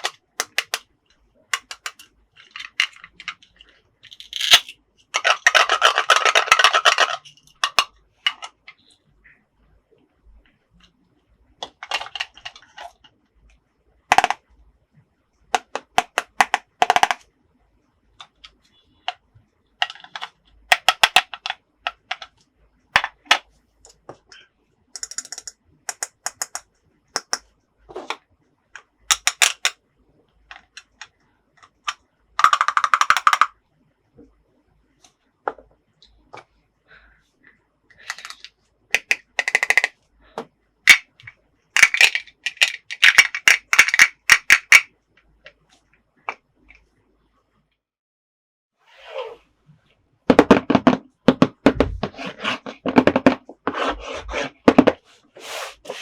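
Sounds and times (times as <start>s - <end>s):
plastic toys rattling: 0.0s - 0.8s, 1.5s - 8.8s, 11.6s - 13.0s, 19.8s - 22.3s, 31.7s - 33.5s, 38.0s - 40.0s, 40.9s - 44.9s
plastic toys clicking and clattering: 0.0s - 9.0s, 11.6s - 13.2s, 14.1s - 14.4s, 15.6s - 17.3s, 19.8s - 22.4s, 25.0s - 28.2s, 28.8s - 29.8s, 30.5s - 33.5s, 37.9s - 40.0s, 40.8s - 44.9s.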